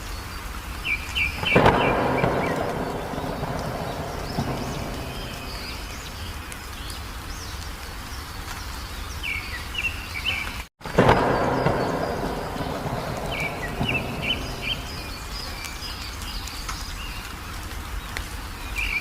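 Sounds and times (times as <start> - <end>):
outdoor background noise: 0.0 - 19.0
songbirds chirping: 0.0 - 19.0
deep noise surge: 1.5 - 6.3, 10.9 - 15.9.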